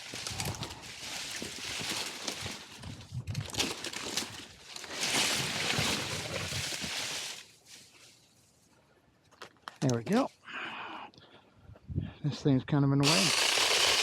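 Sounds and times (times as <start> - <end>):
tree branches rustling: 0.0 - 8.8, 13.0 - 14.0.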